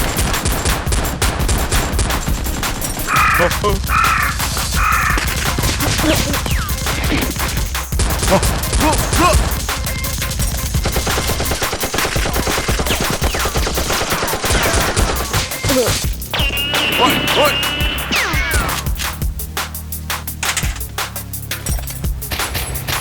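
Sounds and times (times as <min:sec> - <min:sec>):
automatic gunfire bursts: 0:08.0 - 0:15.7.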